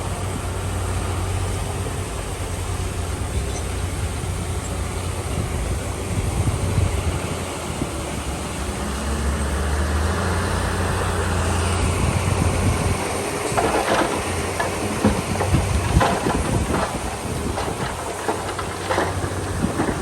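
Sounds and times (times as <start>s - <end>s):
bulldozer diesel engine running: 0.0s - 20.0s.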